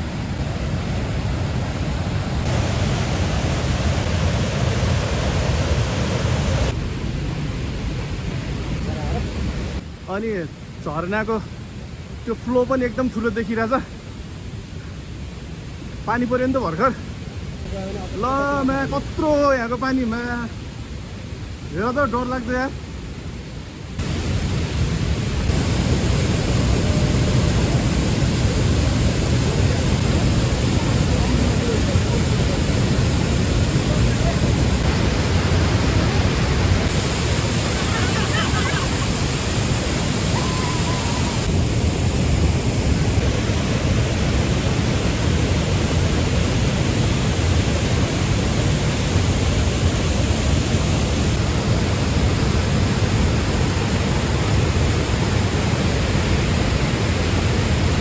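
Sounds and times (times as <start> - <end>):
floodwater rushing: 0.0 - 7.0, 24.0 - 58.0.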